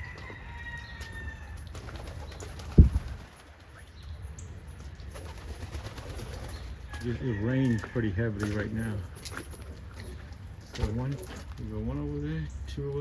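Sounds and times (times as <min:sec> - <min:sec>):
pigeon wing flaps: 0:01.6 - 0:03.8, 0:05.1 - 0:06.8.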